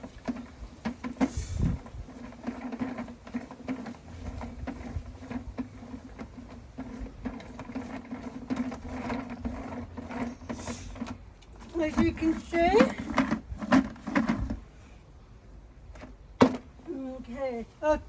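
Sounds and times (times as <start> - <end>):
washing machine motor humming: 0.0 - 13.6
mechanical clicking and rattling: 0.0 - 14.6.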